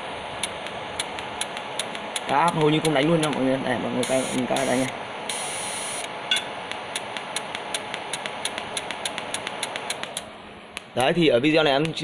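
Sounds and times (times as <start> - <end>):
welder arc crackling clicks: 0.4 - 11.2
steady hiss: 1.4 - 6.1.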